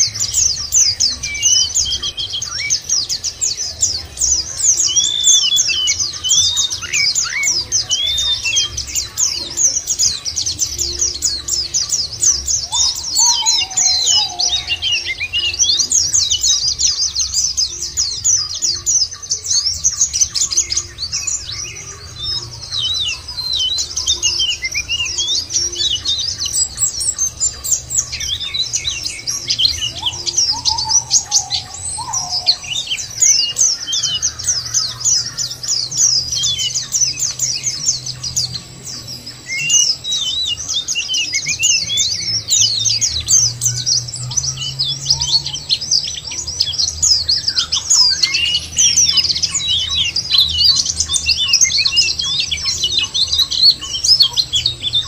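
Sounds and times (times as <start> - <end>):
flock of birds twittering: 0.0 - 55.0.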